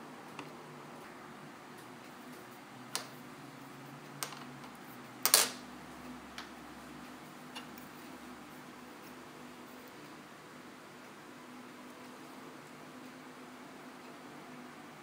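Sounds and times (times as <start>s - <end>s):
small parts clicking on work surface: 4.2s - 5.6s.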